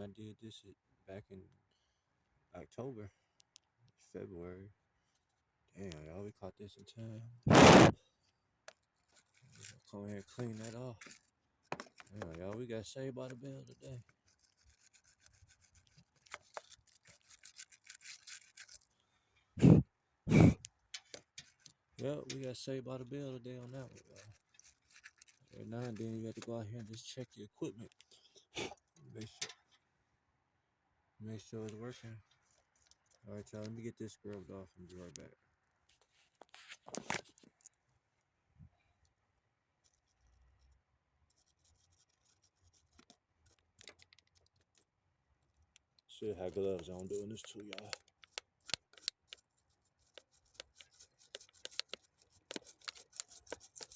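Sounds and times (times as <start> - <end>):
loud bursts of noise: 7.5 - 7.9
brush scrubbing metal terminal: 9.0 - 12.6, 13.2 - 18.9, 21.0 - 27.1, 29.2 - 29.6, 46.2 - 53.9
scrubbing battery terminal: 47.1 - 49.5, 50.1 - 53.9.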